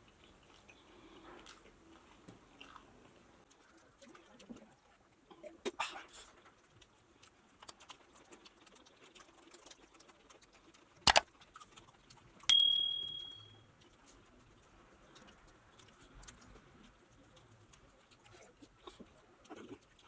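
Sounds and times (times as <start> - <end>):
ringing clink: 12.5 - 13.6.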